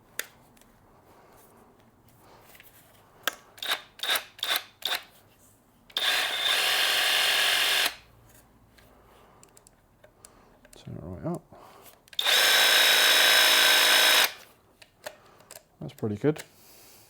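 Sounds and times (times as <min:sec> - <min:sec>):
jigsaw buzzing: 0:06.0 - 0:08.0, 0:12.2 - 0:14.4.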